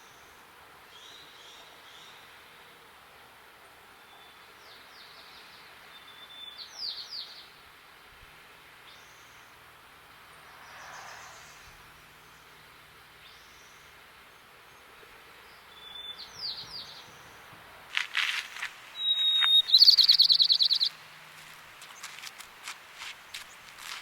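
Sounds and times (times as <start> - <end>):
sparrow singing: 15.5 - 17.4, 19.0 - 22.2.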